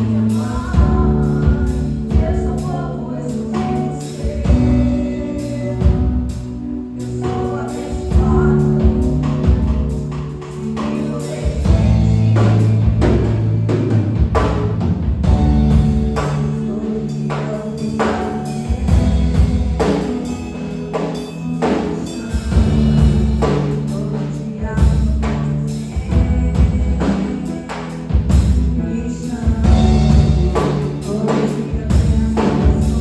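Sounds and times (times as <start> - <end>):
drum kit strokes: 0.0 - 33.0
long held bass notes: 0.0 - 33.0.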